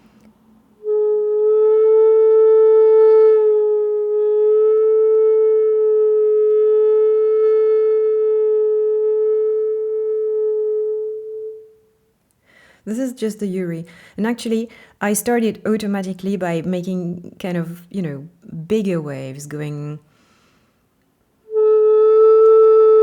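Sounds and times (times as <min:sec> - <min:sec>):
bamboo flute wavering low note: 0:00.1 - 0:12.0, 0:21.4 - 0:23.0.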